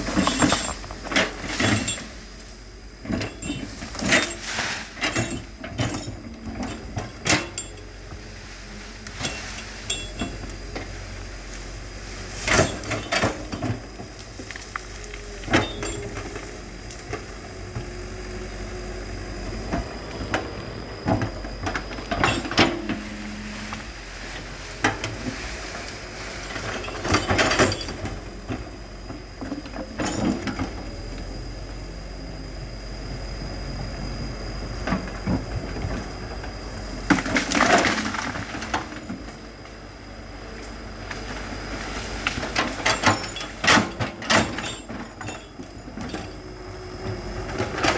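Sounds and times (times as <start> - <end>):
diesel engine running: 0.0 - 47.9
metallic clanks and knocks: 19.7 - 25.3.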